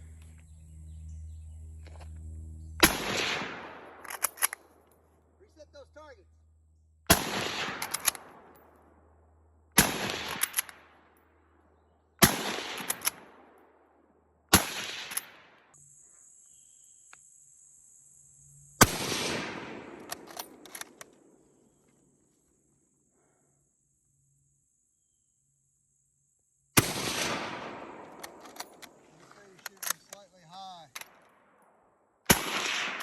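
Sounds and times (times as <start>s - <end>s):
rolling echo: 0.0s - 15.7s
rifle shots: 2.8s - 4.8s, 7.1s - 9.0s, 9.7s - 11.2s, 12.2s - 13.7s, 14.5s - 15.6s, 18.8s - 21.1s, 26.8s - 29.0s, 32.2s - 33.0s.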